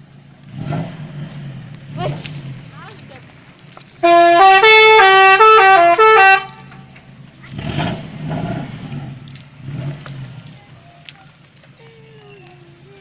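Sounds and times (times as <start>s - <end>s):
musical horn playing a tune: 4.0s - 6.8s.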